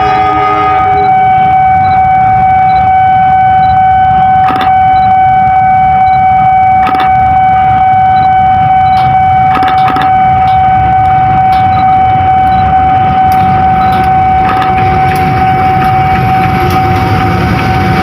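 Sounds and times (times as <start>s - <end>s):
train rumble: 0.0s - 18.0s
wheels clacking over rail joint: 13.3s - 17.2s.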